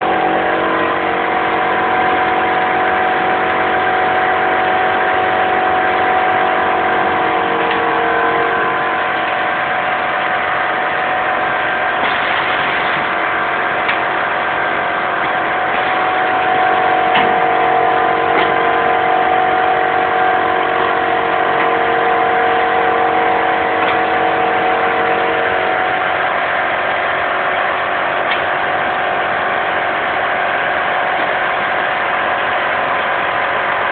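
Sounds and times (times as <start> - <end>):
machine motors and fans humming: 0.0 - 33.9.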